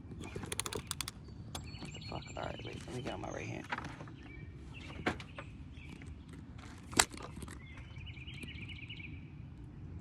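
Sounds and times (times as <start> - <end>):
hand tool clicks and taps: 0.4 - 1.7.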